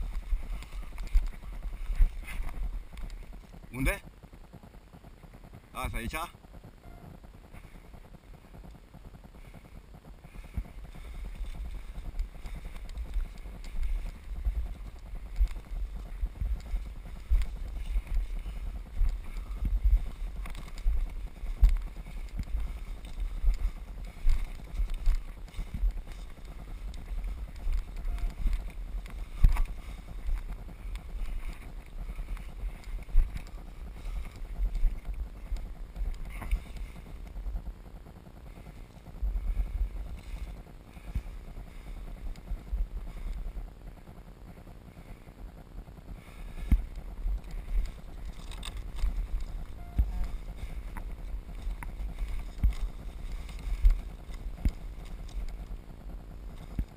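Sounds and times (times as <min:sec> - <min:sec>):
wind buffeting microphone: 0:00.0 - 0:56.9.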